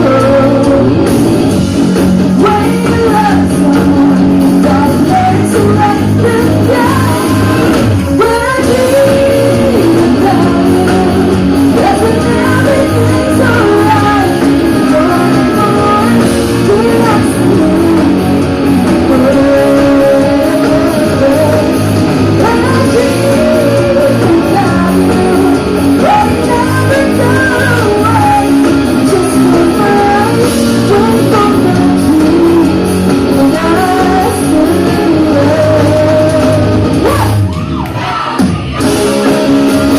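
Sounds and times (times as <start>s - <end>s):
person singing: 0.0s - 1.3s, 2.3s - 39.0s
live pop-rock band: 0.0s - 39.9s.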